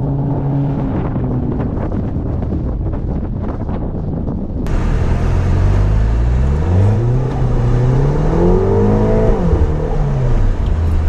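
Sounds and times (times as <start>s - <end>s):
rough engine rumble: 4.7s - 11.0s
turbocharged engine accelerating: 4.7s - 11.0s.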